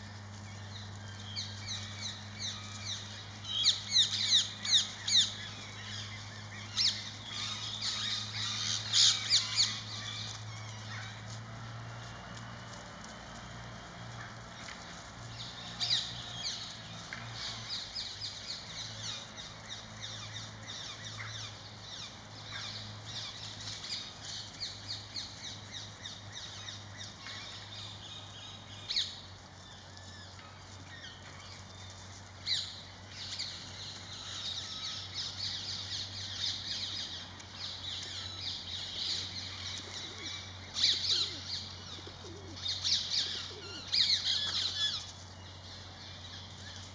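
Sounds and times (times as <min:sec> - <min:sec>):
loud sharp bird calls: 0:32.5 - 0:45.1
birds chirping in chorus: 0:32.5 - 0:46.9.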